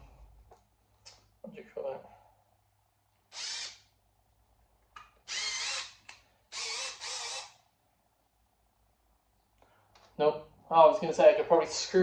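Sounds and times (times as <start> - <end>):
power drill drilling through sheet steel: 3.3 - 3.8, 5.3 - 7.6.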